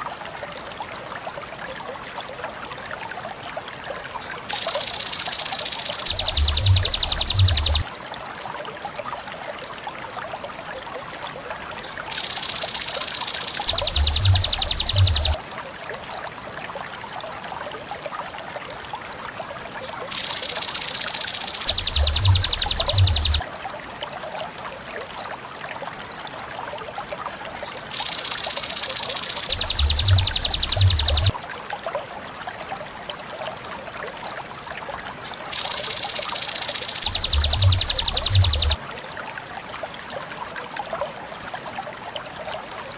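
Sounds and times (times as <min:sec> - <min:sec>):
faint bird chirps: 0:04.2 - 0:07.8, 0:11.9 - 0:15.4, 0:20.0 - 0:23.4, 0:27.7 - 0:31.4, 0:35.3 - 0:38.8
high insect-like trill: 0:04.5 - 0:07.8, 0:12.1 - 0:15.4, 0:20.1 - 0:23.4, 0:27.9 - 0:31.3, 0:35.5 - 0:38.8.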